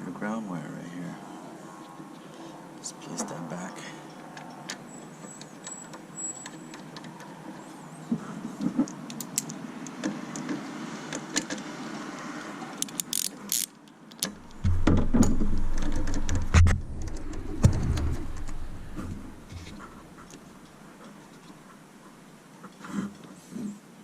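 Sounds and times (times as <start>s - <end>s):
low uneven rumble: 14.4s - 21.0s.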